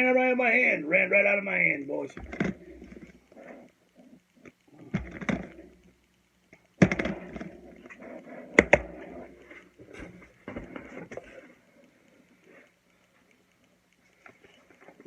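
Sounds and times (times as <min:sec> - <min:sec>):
plastic cubes knocking: 0:04.9 - 0:05.8, 0:06.8 - 0:07.7, 0:08.6 - 0:09.3.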